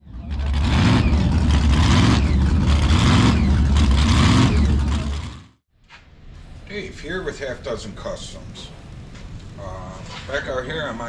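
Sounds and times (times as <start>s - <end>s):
vehicle engine revving: 0.0s - 5.6s.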